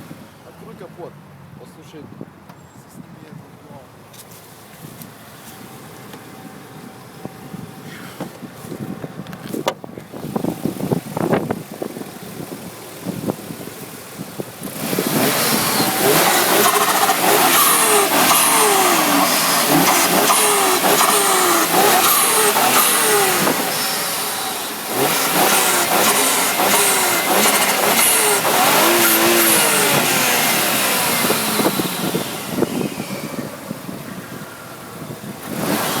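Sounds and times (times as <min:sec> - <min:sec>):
car engine revving: 0:10.2 - 0:36.0.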